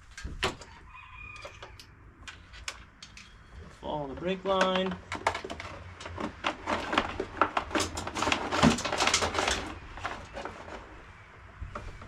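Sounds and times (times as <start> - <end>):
cable clicking and rattling: 4.0 - 11.0.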